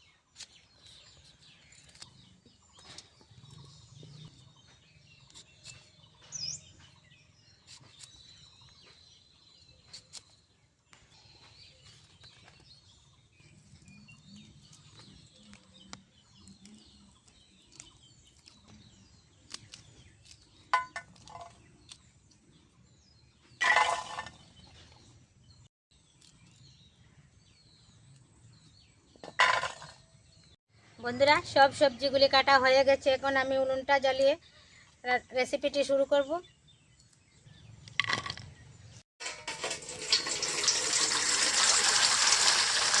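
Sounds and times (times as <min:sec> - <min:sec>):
small birds chirping: 0:00.0 - 0:39.0.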